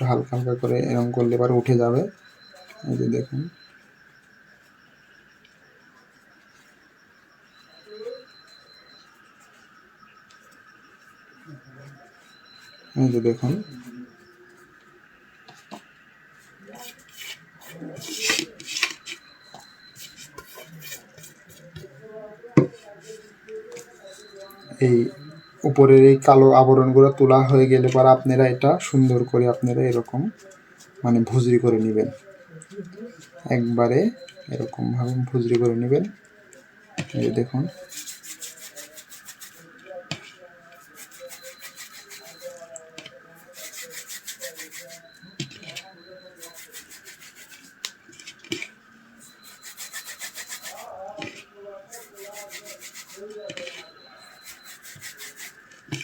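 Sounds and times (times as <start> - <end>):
hands rubbing bread into crumbs: 15.5 - 22.0, 37.0 - 56.0
scraping and clinking on a dish: 16.8 - 21.6, 37.0 - 56.0.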